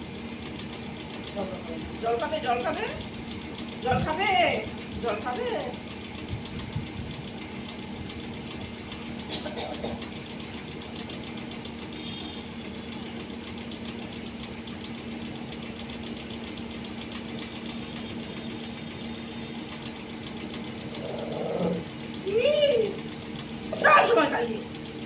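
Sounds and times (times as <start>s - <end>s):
motor humming: 0.0s - 25.0s.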